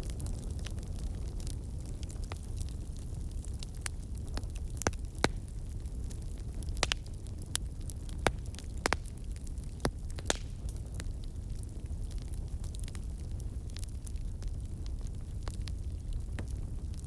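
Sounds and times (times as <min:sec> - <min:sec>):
crackles and pops of burning wood: 0:00.0 - 0:17.0
wood fire burning: 0:00.0 - 0:17.0.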